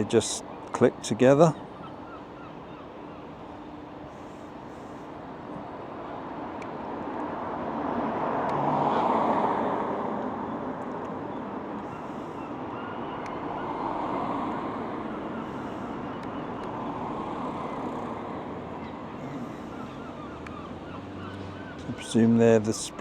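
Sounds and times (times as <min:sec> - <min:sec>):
vehicle passing: 0:07.8 - 0:10.2, 0:16.9 - 0:22.6.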